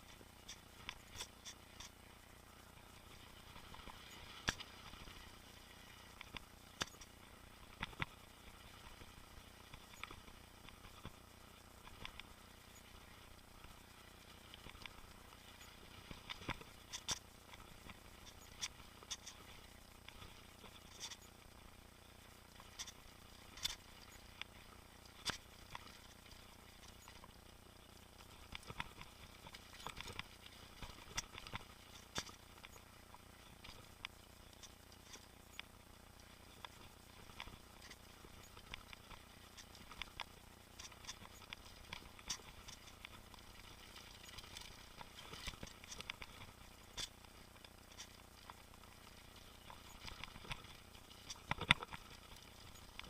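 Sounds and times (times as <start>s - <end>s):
low steady hiss: 0.0s - 53.0s
mountain bike clicks and rattles: 44.2s - 48.2s.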